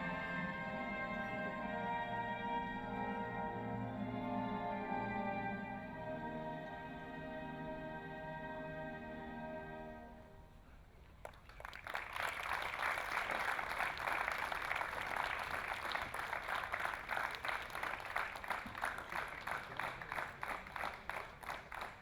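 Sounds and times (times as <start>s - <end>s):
audience applauding: 11.2s - 22.0s.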